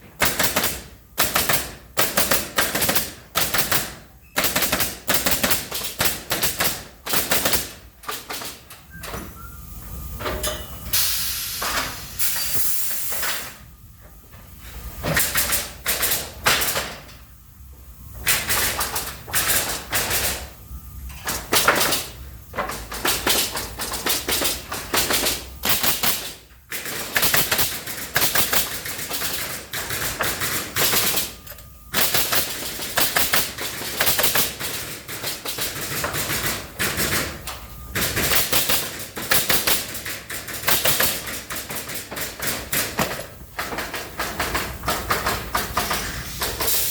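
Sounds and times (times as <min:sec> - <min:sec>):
machine sharp mechanical impacts: 0:21.2 - 0:37.2.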